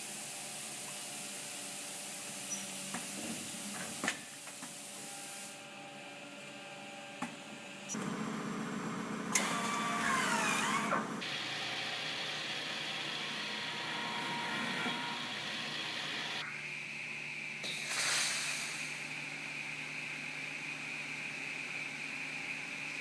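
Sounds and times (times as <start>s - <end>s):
woodworking machine humming: 5.6s - 16.4s.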